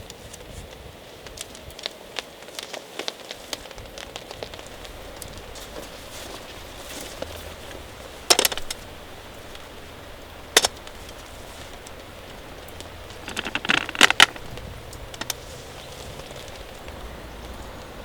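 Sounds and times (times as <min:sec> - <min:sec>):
rain hissing: 0:00.0 - 0:18.0
metallic clinks and rattles: 0:13.1 - 0:14.6.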